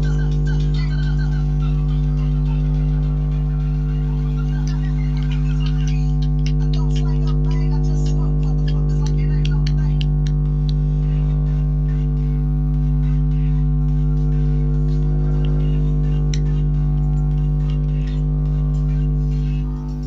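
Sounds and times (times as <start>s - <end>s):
droning chord music: 0.0s - 20.0s.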